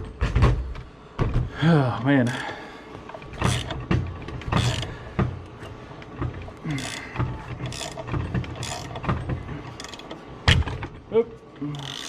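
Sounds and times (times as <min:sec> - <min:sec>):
metallic clunks and rattles: 0:03.0 - 0:11.1.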